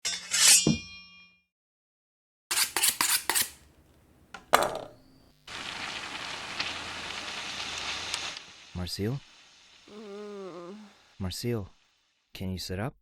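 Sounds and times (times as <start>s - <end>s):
meat sizzling: 5.0s - 12.2s.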